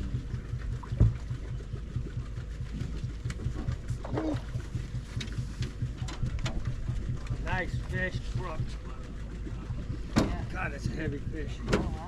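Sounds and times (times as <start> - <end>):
boat motor idling: 0.0 - 12.0.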